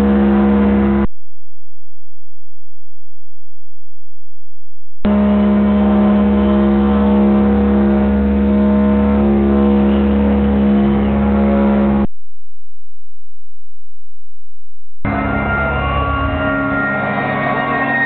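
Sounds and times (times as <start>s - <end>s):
distorted droning rock guitar: 0.0s - 1.1s, 5.0s - 18.0s.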